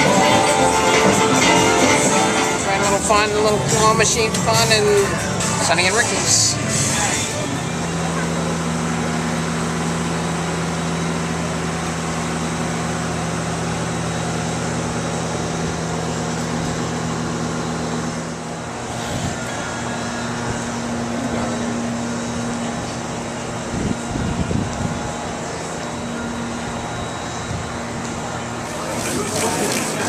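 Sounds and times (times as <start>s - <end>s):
general noise wash: 0.0s - 30.0s.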